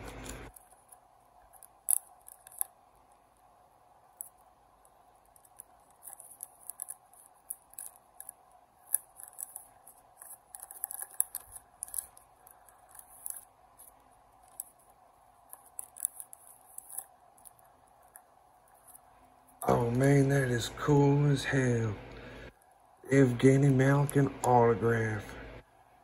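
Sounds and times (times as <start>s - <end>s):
faint steady hum: 0.0s - 26.0s
packaging crinkling and rustling: 5.1s - 19.0s.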